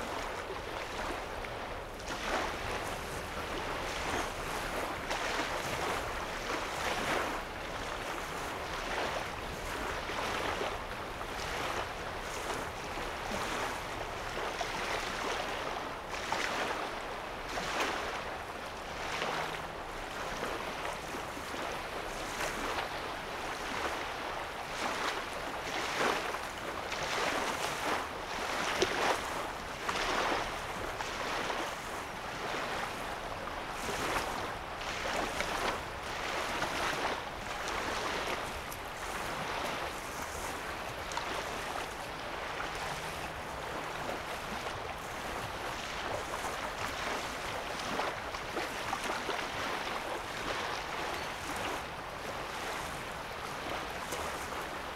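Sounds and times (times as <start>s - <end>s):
waves lapping on sandy shore: 0.0s - 54.9s.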